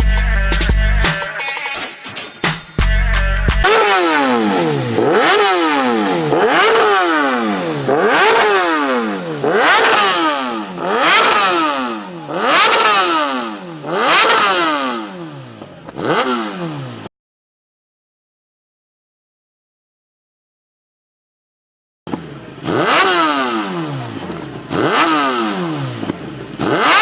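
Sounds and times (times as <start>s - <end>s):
motorcycle engine revving: 3.5s - 17.1s, 22.1s - 27.0s.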